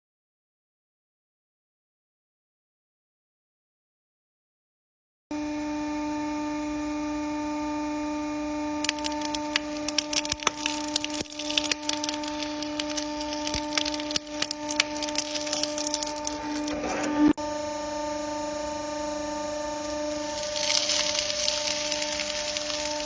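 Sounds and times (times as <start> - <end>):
welding machine humming: 7.8 - 17.5, 18.5 - 23.0
welding arc crackling: 8.7 - 17.4, 19.8 - 23.0.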